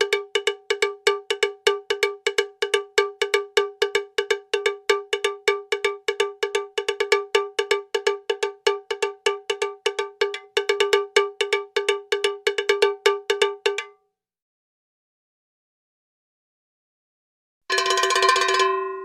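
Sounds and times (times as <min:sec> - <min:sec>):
cowbell clanking: 0:00.0 - 0:13.9, 0:17.7 - 0:19.0.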